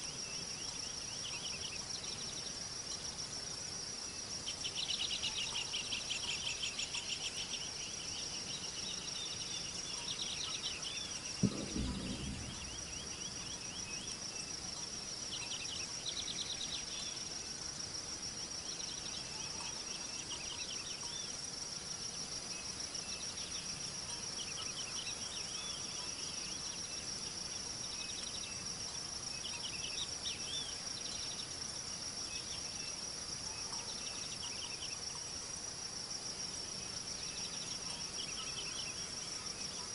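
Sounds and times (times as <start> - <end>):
insect chorus: 0.0 - 39.9
low thump: 11.4 - 13.2.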